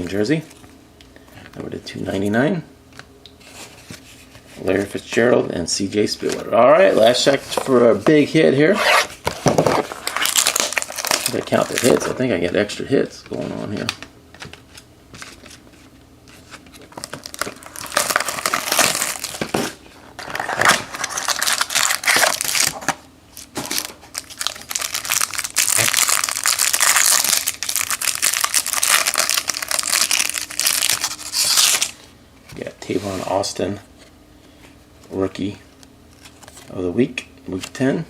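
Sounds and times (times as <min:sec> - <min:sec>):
wrapper crinkling being torn open: 0:09.9 - 0:12.1, 0:16.7 - 0:19.7, 0:20.3 - 0:32.0.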